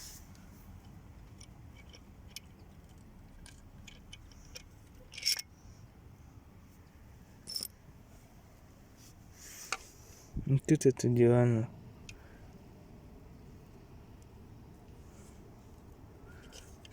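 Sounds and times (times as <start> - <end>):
metal engine parts clinking: 1.2 - 5.5, 7.4 - 7.8, 16.3 - 16.9.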